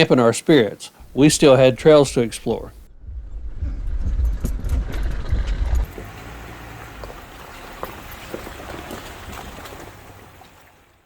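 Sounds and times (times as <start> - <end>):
vehicle engine rumble: 1.0 - 11.0
vehicle rattles and clicks: 3.5 - 10.6.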